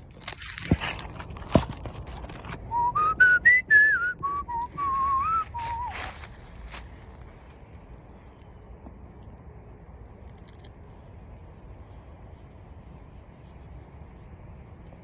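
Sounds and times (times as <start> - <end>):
person whistling a tune: 2.7 - 6.1.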